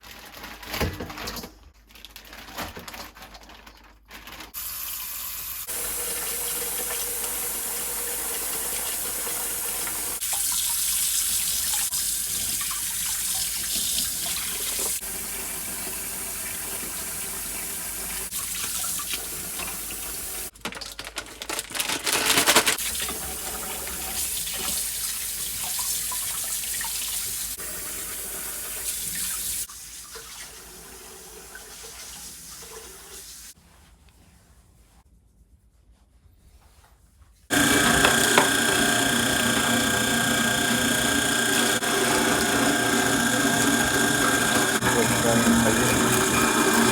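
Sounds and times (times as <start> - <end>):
water running from a tap: 4.6 - 20.6, 22.7 - 33.6, 37.5 - 46.9.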